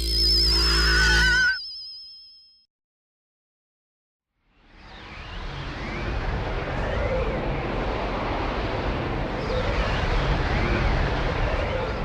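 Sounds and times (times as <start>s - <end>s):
wavering whistle-like tones: 0.0s - 1.7s
deep rumbling magic effect: 4.6s - 12.0s.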